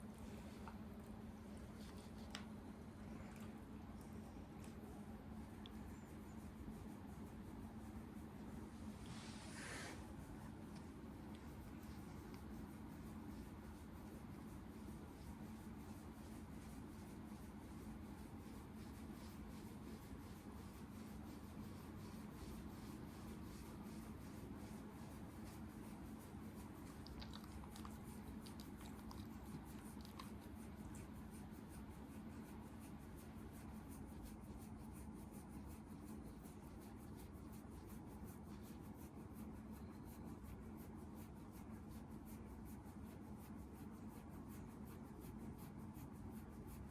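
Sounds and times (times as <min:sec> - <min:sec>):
faint hiss: 0:05.5 - 0:33.8.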